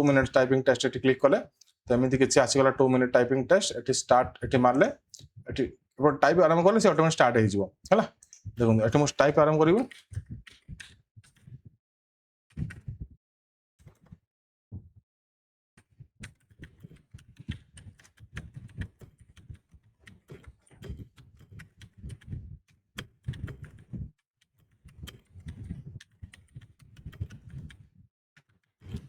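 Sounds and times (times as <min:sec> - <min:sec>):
typing on computer keyboard: 0:16.2 - 0:22.4, 0:23.0 - 0:29.0.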